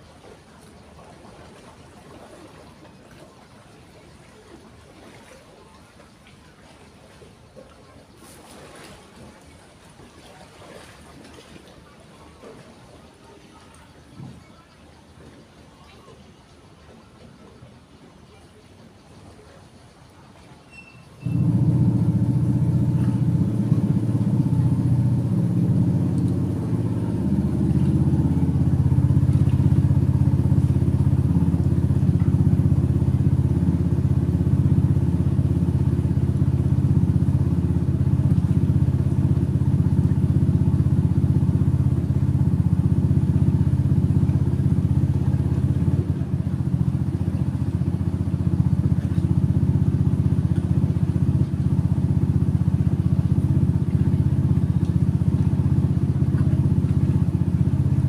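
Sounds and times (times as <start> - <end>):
small engine running: 21.2 - 58.0.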